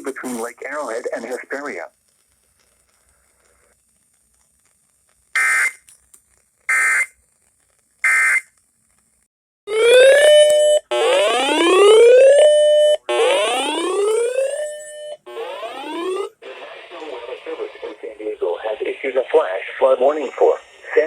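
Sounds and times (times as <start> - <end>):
electronic alert tone whooping: 9.7 - 16.4
digital data screeches: 13.6 - 18.2.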